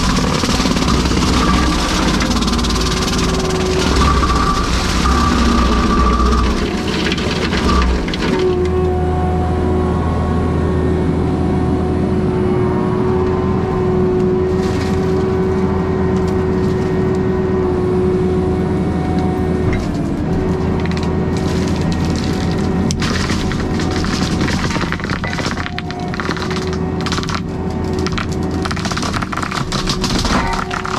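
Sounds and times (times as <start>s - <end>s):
mower working into material: 0.0s - 8.8s, 19.8s - 30.9s
flail mower engine droning: 0.0s - 25.1s.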